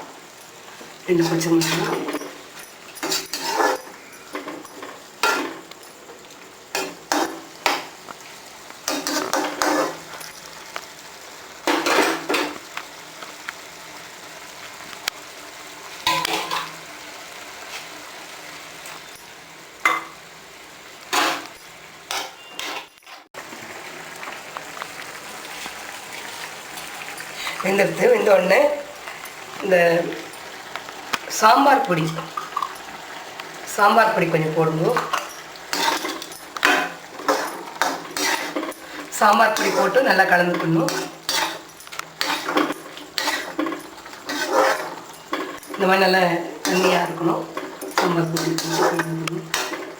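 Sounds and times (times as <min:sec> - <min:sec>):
metal spoon scraping pot: 0:03.0 - 0:05.5, 0:35.0 - 0:38.9, 0:39.5 - 0:45.8, 0:46.6 - 0:49.9.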